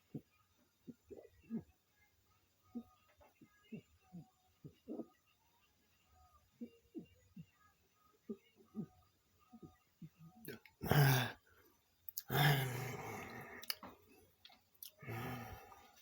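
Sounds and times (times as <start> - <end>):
man groaning exhale: 10.8 - 11.4, 12.3 - 13.7
man gulping liquid: 12.1 - 14.0
throat clicks swallowing: 13.5 - 15.1.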